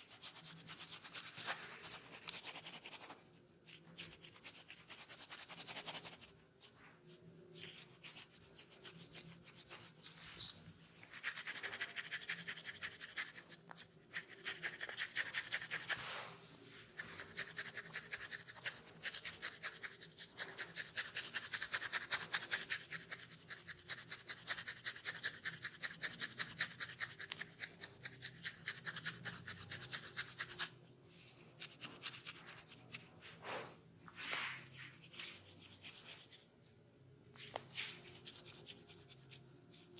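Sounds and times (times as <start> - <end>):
fingernails scratching through hair: 0.1 - 6.3, 34.3 - 36.4, 37.4 - 39.9.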